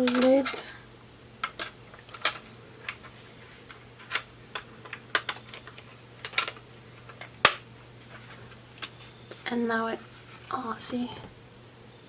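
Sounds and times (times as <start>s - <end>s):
keyboard plastic clicks: 4.1s - 6.6s.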